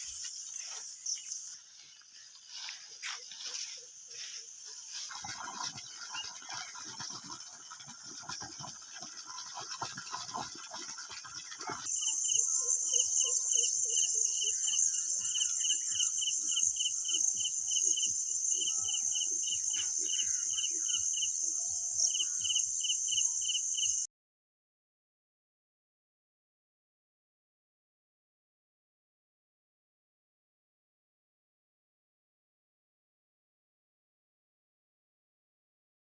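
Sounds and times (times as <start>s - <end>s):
crickets chirring: 11.9s - 24.0s.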